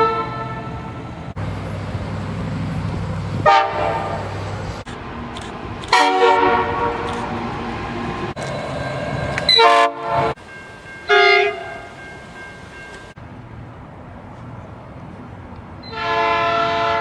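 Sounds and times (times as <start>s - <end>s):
train horn blasts: 0.0s - 1.1s, 3.4s - 4.4s, 5.9s - 7.4s, 9.5s - 10.4s, 11.1s - 12.0s, 15.8s - 17.0s
train rumble: 0.0s - 17.0s.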